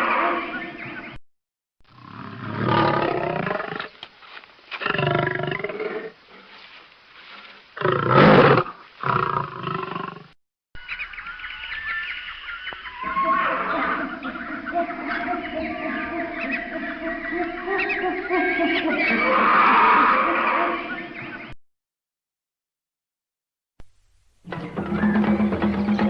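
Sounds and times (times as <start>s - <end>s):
robot animal roaring: 1.9s - 3.8s, 18.4s - 21.0s.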